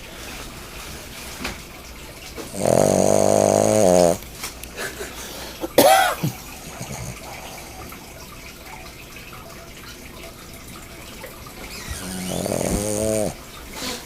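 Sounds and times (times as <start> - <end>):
dog snoring: 2.4 - 4.2, 6.6 - 8.0, 11.7 - 13.4
dog breathing softly: 6.7 - 8.1, 11.8 - 13.4.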